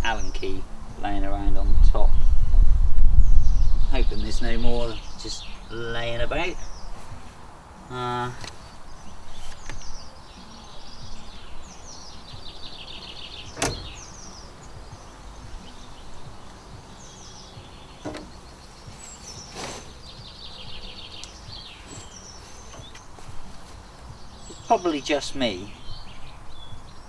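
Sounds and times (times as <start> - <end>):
birds singing and chirping: 0.0 - 27.0
sharp knocks: 18.0 - 18.4.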